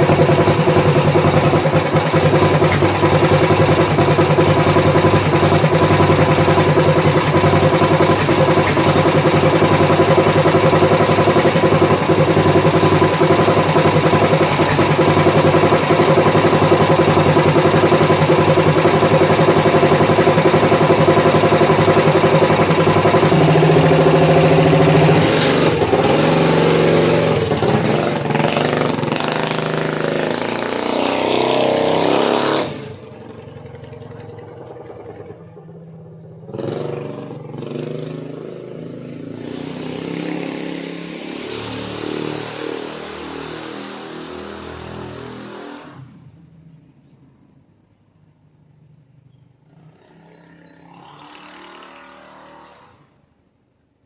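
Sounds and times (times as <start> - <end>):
mini-bike engine running: 0.0 - 38.0.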